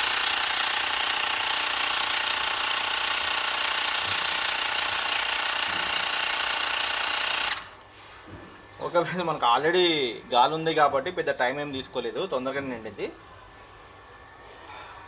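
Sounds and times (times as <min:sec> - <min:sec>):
electric air compressor running: 0:00.0 - 0:07.8.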